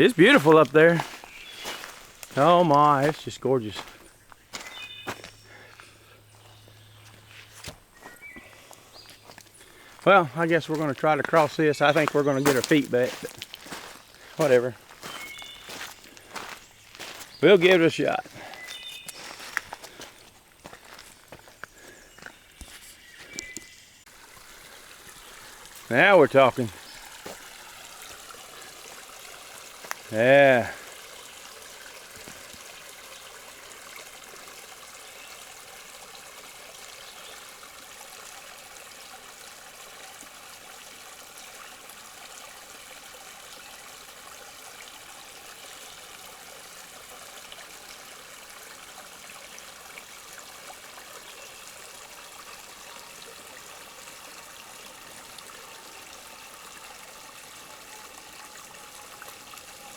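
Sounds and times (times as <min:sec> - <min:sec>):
creek water over rocks: 0:00.0 - 0:59.9.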